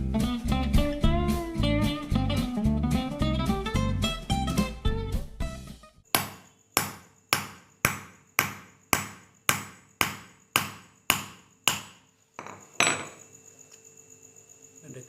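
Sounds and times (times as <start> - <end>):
background guitar music: 0.0 - 6.0.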